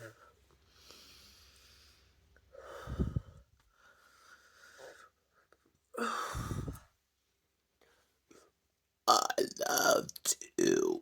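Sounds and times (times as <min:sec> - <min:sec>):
woman breathing: 0:00.6 - 0:07.0.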